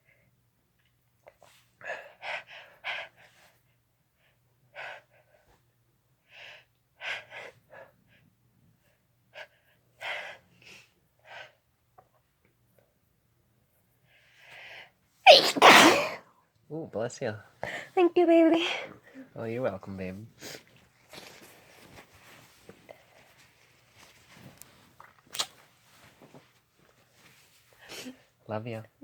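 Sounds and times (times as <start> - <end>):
person gasping before sneeze: 15.3 - 16.2.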